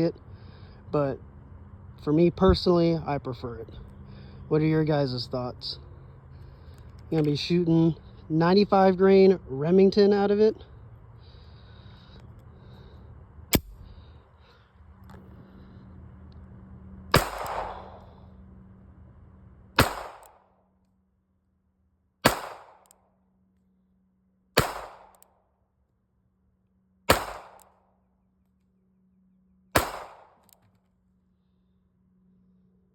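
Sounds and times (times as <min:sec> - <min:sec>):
pistol shots with echo: 0:17.1 - 0:18.0, 0:19.8 - 0:20.4, 0:22.2 - 0:22.9, 0:24.6 - 0:25.2, 0:27.1 - 0:27.8, 0:29.8 - 0:30.6.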